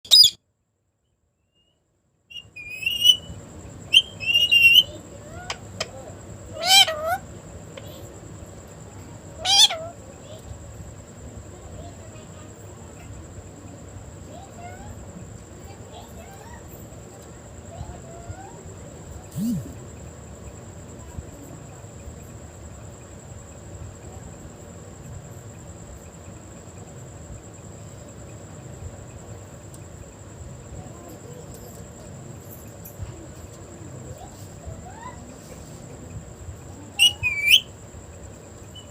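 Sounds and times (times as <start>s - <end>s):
parrot chirping and squawking: 0.0s - 0.4s, 2.4s - 3.3s, 3.9s - 5.0s, 6.5s - 7.3s, 9.4s - 10.0s, 37.0s - 37.7s
faint high tone and hiss: 0.1s - 38.9s
high-pitched insect trill: 2.3s - 38.9s.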